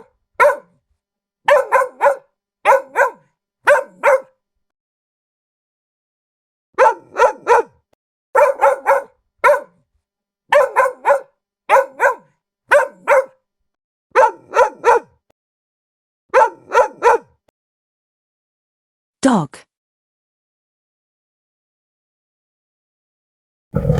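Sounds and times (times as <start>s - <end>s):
dog barking: 0.0s - 0.8s, 1.4s - 4.4s, 6.8s - 7.8s, 8.4s - 9.9s, 10.5s - 13.4s, 14.1s - 15.2s, 16.3s - 17.4s.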